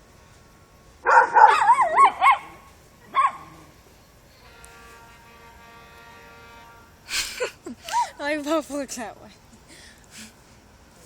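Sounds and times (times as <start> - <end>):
dog yelping barks: 1.0 - 3.6.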